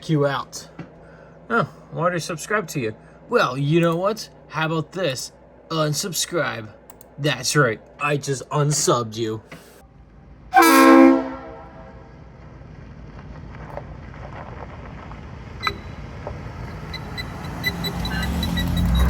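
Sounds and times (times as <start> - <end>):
low steady rumble: 0.0 - 17.6
train air horn blast: 10.5 - 12.0.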